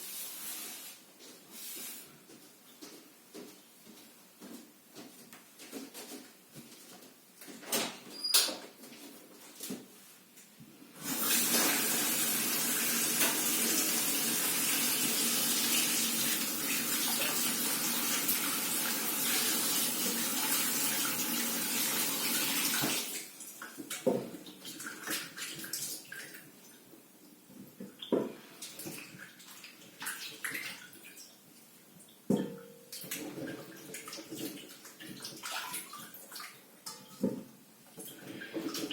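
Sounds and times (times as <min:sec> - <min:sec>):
tap water running into sink: 0:11.0 - 0:23.2.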